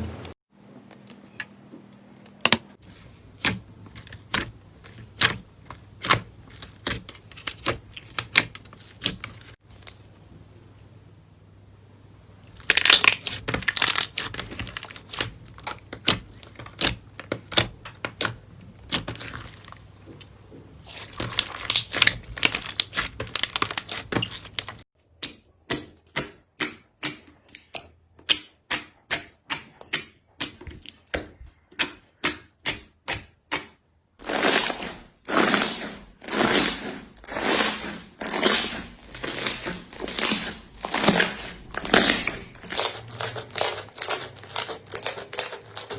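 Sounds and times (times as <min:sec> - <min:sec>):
slime popping and crackling: 0:12.6 - 0:19.8, 0:20.9 - 0:24.8, 0:41.8 - 0:45.9.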